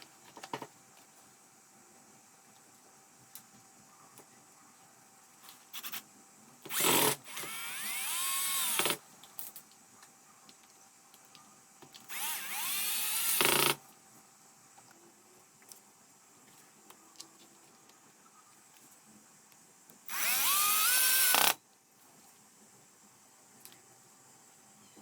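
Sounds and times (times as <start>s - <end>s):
power tool motor whine: 6.7s - 9.0s, 12.1s - 13.8s, 20.1s - 21.6s.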